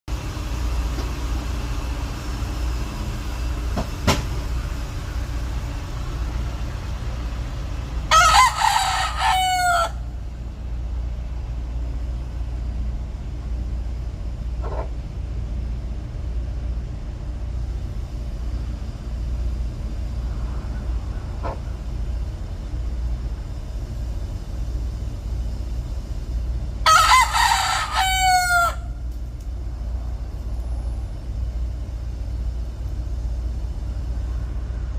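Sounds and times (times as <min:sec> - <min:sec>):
low background rumble: 0:00.1 - 0:34.9
rooster crowing: 0:08.0 - 0:10.2, 0:26.8 - 0:29.1.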